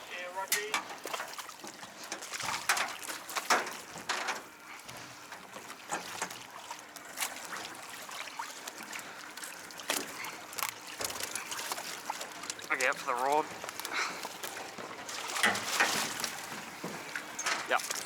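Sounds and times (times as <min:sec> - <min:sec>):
water lapping: 0:00.0 - 0:18.0
water splashing: 0:05.3 - 0:18.0.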